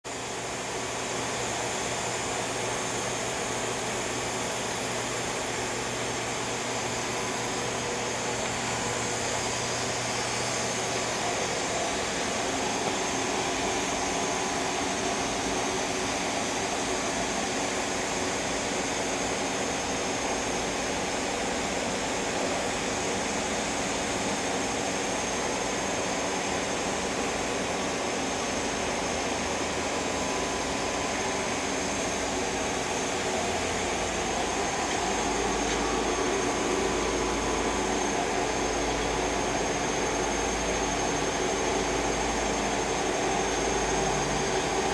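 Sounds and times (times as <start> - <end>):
machining center mechanical hum: 0.1 - 44.9.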